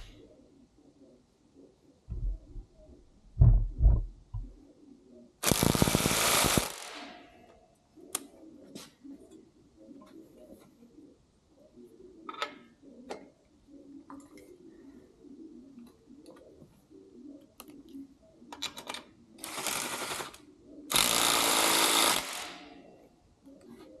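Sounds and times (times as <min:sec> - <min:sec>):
rapid-hammering power tool: 0:05.4 - 0:07.1, 0:19.4 - 0:22.7.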